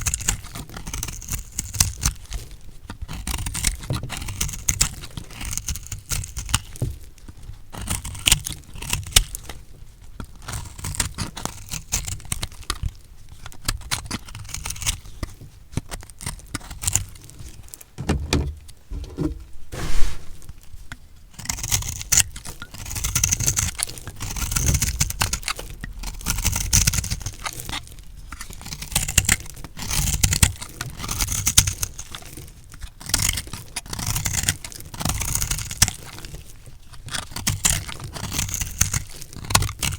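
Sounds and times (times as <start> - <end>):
sharp knock: 18.0 - 20.5.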